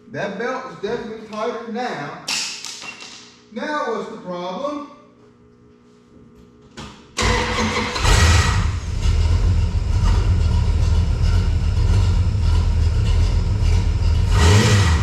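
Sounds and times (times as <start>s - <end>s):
engine starting and idling: 7.2s - 15.0s.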